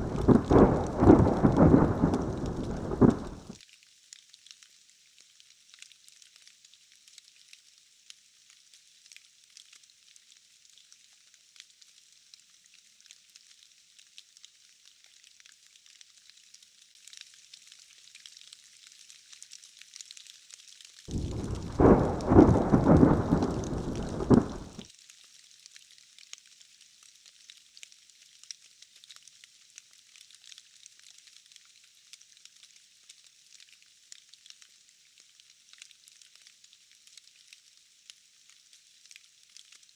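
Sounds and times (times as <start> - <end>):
rain hiss: 0.0 - 3.6, 21.1 - 24.8
thunder rumble: 0.0 - 3.6, 21.1 - 24.8.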